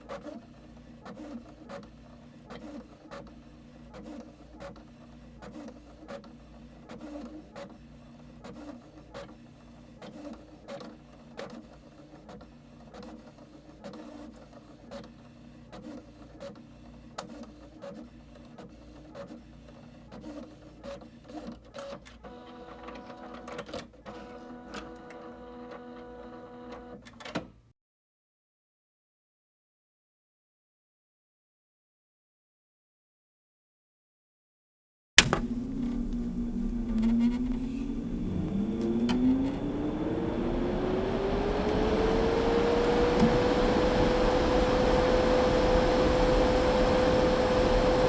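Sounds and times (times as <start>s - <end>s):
small machine clicking and humming: 35.2s - 48.0s
steady whine: 35.2s - 48.0s.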